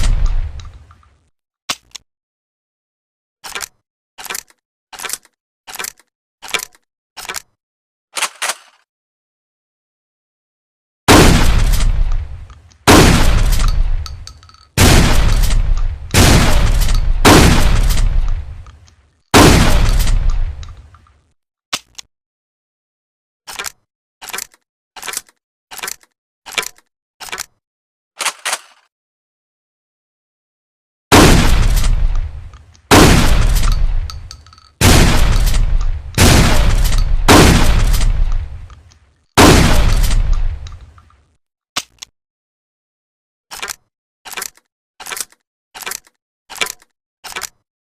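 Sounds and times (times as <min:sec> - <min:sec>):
shotgun blasts echoing: 0:11.1 - 0:18.7, 0:19.4 - 0:20.6, 0:31.1 - 0:38.7, 0:39.4 - 0:40.7.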